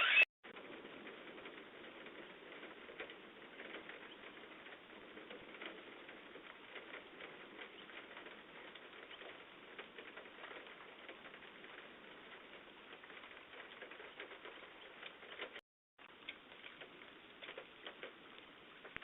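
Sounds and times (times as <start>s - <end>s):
rain pattering on hard surfaces: 0.5s - 19.0s.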